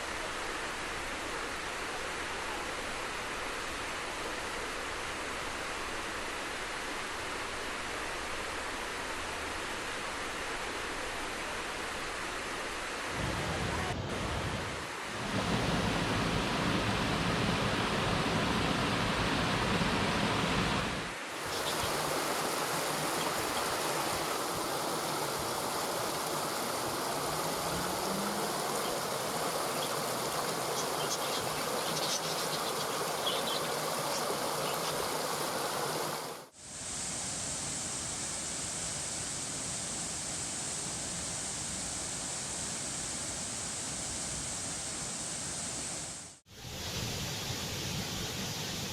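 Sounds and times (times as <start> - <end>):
waterfall rushing: 12.8 - 36.6.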